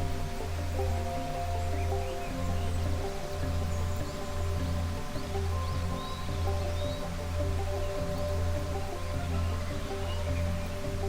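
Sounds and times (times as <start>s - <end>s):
high bird chirps: 0.0s - 11.0s
soft ambient music: 0.0s - 11.0s
waterfall hiss: 0.0s - 11.0s.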